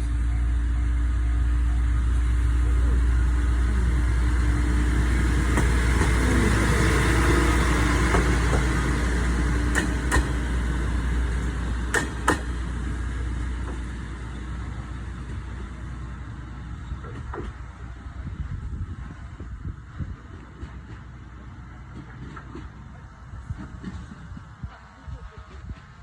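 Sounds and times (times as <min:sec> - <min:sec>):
diesel railcar engine rumble: 0:00.0 - 0:26.0
wheels clacking over rail joint: 0:02.2 - 0:13.9.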